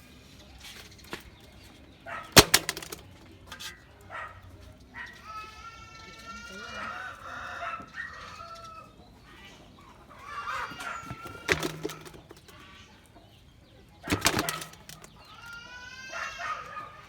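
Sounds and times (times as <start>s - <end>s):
loud clatter bursts: 2.4s - 3.0s, 11.2s - 12.4s, 14.1s - 15.1s.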